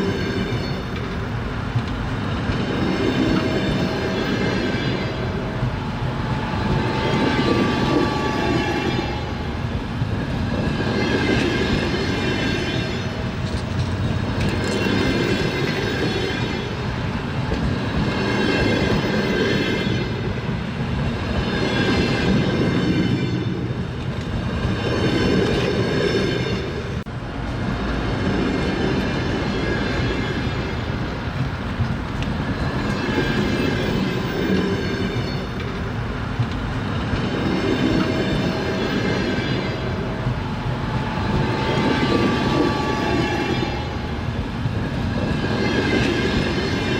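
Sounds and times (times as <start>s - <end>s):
train wheels clattering: 0.0s - 16.8s.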